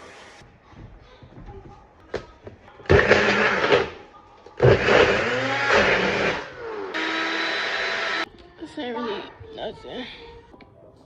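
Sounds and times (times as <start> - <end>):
electric blender motor whine: 2.9 - 4.0, 4.6 - 8.3.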